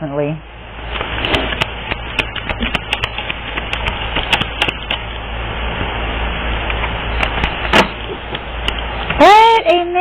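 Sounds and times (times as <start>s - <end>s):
cards shuffling clicks: 1.0s - 5.1s.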